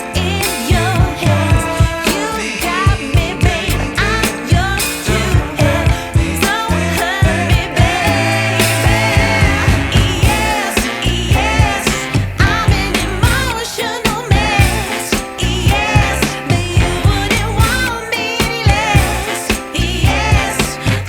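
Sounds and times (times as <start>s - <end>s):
bass: 0.0s - 21.0s
pop song with sung vocals: 0.0s - 21.0s
drum beat: 0.6s - 2.3s, 2.9s - 21.0s.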